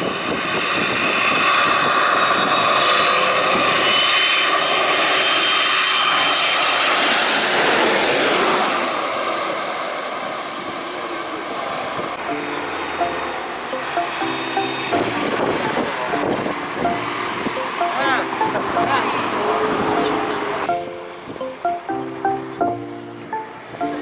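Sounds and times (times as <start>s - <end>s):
jet airliner passing overhead: 0.2s - 12.1s.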